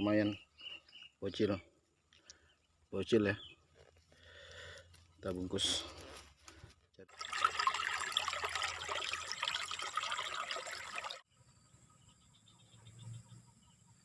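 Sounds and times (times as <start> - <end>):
water splashing and trickling: 7.0 - 11.3.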